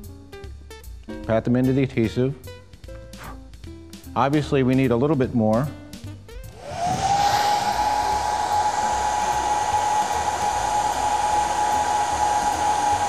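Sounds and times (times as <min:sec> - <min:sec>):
heat gun blowing hot air: 0:06.5 - 0:13.0.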